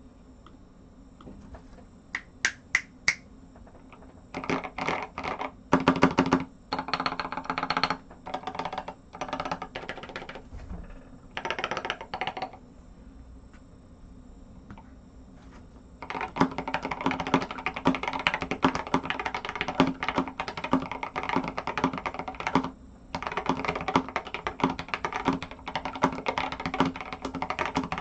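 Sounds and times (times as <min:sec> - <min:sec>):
mechanical keyboard typing: 0:03.9 - 0:10.4, 0:11.4 - 0:12.6, 0:16.0 - 0:28.0.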